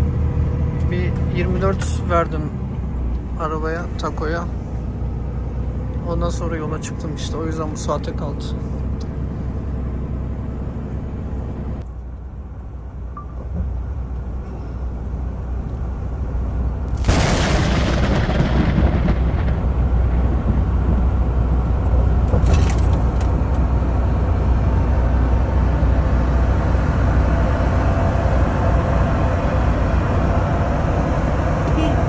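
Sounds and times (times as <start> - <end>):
truck engine rumble: 0.0 - 32.0
loud rush of noise: 16.9 - 20.5.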